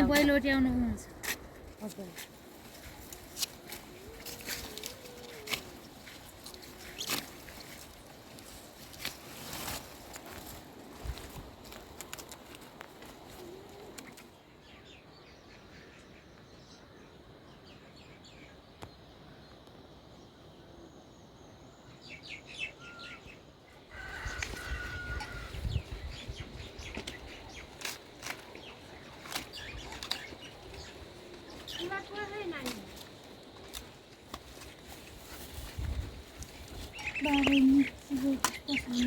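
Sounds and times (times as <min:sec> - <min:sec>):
birds chirping: 0:20.9 - 0:33.5, 0:35.8 - 0:39.0.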